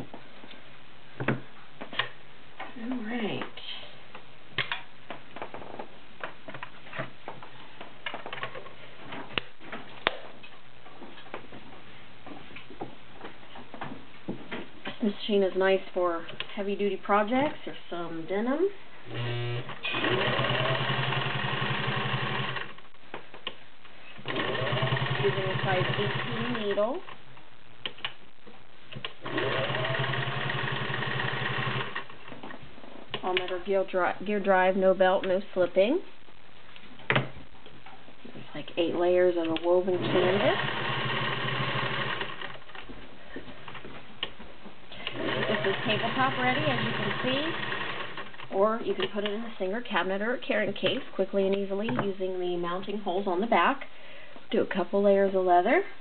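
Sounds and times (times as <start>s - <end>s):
sewing machine motor running: 19.1s - 22.7s, 24.3s - 26.8s, 29.2s - 32.1s, 40.0s - 42.6s, 45.0s - 48.3s.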